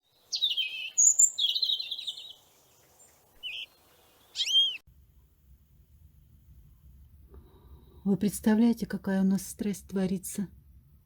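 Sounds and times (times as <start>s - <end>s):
bird chirping: 0.0s - 4.8s.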